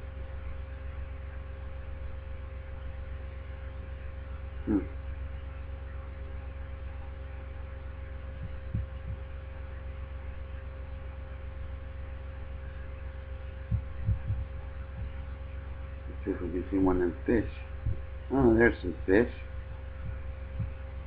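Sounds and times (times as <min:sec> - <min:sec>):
low electrical hum: 0:00.0 - 0:21.0
faint low thumps: 0:08.3 - 0:09.4, 0:13.5 - 0:16.3, 0:17.5 - 0:18.4, 0:19.6 - 0:21.0.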